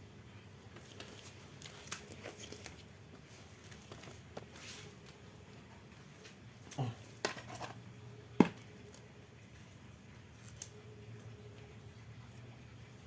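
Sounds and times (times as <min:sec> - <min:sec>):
faint low steady hum: 0:00.0 - 0:13.0.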